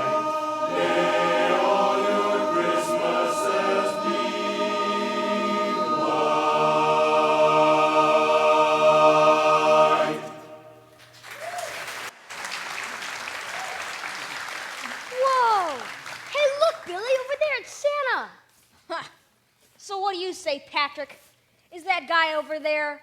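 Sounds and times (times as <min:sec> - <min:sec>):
barbershop chorus singing: 0:00.0 - 0:10.9.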